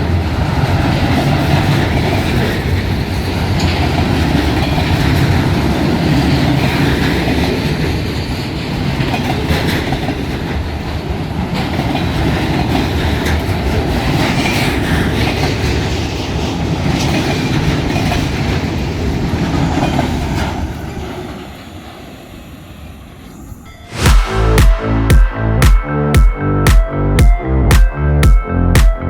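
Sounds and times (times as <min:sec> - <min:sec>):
train wheels clattering over rails: 0:00.0 - 0:21.6
freight train cars rumbling: 0:00.0 - 0:22.8.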